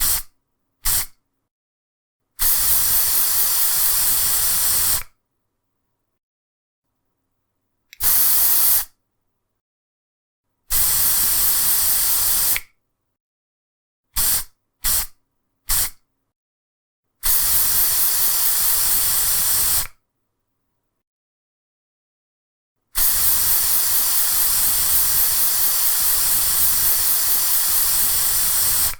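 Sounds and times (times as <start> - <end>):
aerosol can spraying: 0.0 - 1.2, 2.4 - 5.1, 8.0 - 8.9, 10.7 - 12.7, 14.2 - 16.0, 17.2 - 20.0, 23.0 - 28.9.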